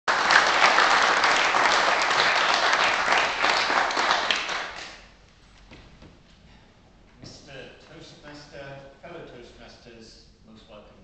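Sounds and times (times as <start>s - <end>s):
audience clapping: 0.1s - 5.2s.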